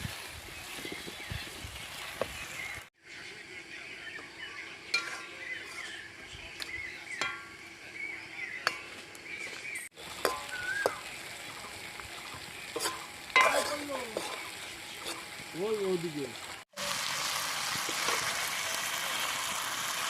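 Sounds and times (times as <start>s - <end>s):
oil sizzling in a pan: 0.0s - 2.9s, 9.6s - 20.0s
metal spatula clinking on pan: 4.9s - 6.0s, 7.2s - 7.6s, 10.2s - 11.0s, 12.8s - 14.4s.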